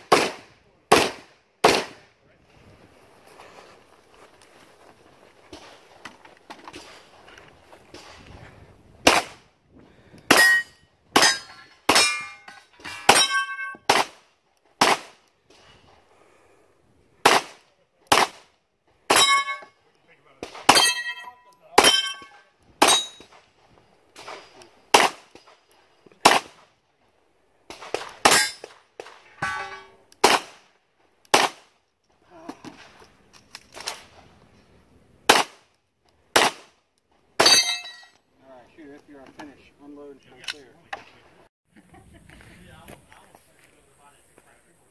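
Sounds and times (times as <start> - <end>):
gunshots: 0.0 - 2.1, 9.0 - 9.4, 13.9 - 14.2, 14.8 - 15.2, 17.2 - 18.5, 24.2 - 25.5, 26.2 - 26.6, 30.2 - 30.7, 31.3 - 31.7, 35.3 - 35.6, 36.3 - 36.7
steel targets clanging: 10.3 - 13.9, 19.1 - 19.8, 20.7 - 23.3, 28.2 - 30.0, 37.4 - 38.2.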